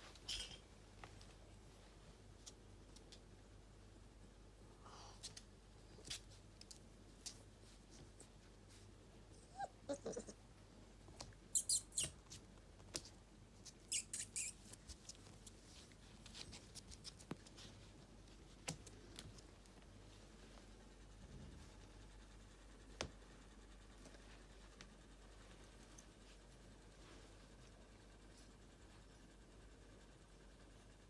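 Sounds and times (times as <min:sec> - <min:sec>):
small clicks and rustles: 0:00.1 - 0:03.5, 0:05.2 - 0:09.0, 0:11.0 - 0:22.2, 0:22.8 - 0:30.8
puppy whining: 0:09.3 - 0:10.4, 0:13.9 - 0:14.6
puppies squeaking: 0:11.6 - 0:12.2, 0:13.8 - 0:14.6.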